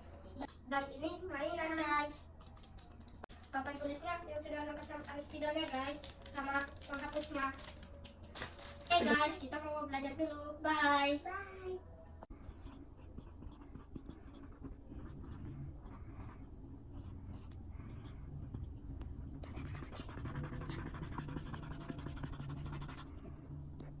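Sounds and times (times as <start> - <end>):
pen scratching on surface: 12.5 - 23.3.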